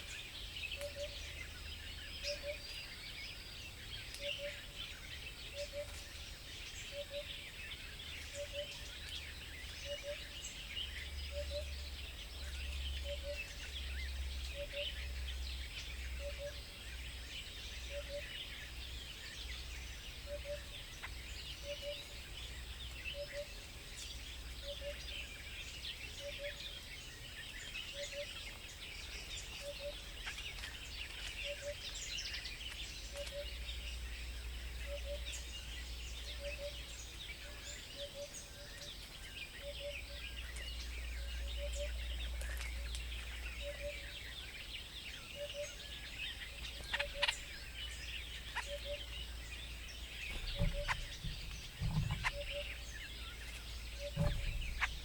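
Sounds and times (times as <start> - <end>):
small birds chirping: 0.0 - 55.0
low rumble: 49.2 - 55.0.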